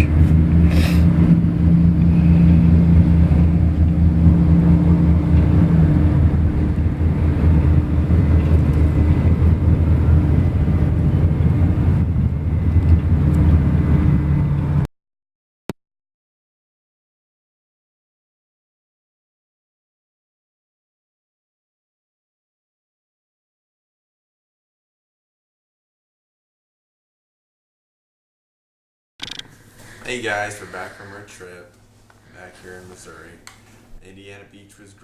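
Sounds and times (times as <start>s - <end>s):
low engine drone: 0.0s - 14.9s, 29.2s - 33.4s.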